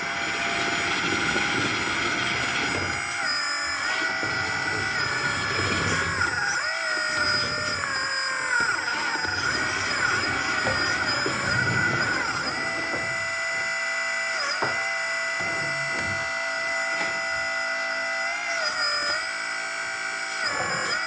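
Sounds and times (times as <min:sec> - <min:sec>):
small electric motors whining: 0:00.0 - 0:21.0.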